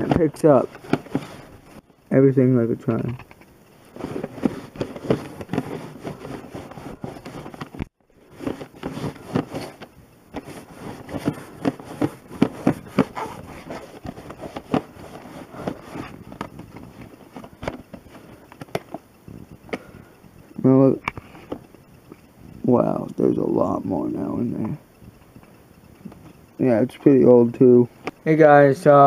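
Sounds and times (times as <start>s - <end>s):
pet hair cleaner scraping fabric: 3.9s - 7.7s, 10.4s - 16.3s.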